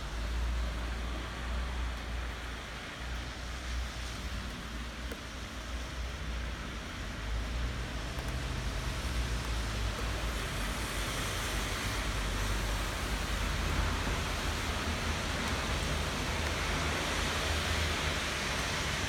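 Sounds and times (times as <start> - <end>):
steady rain falling: 0.0 - 19.0.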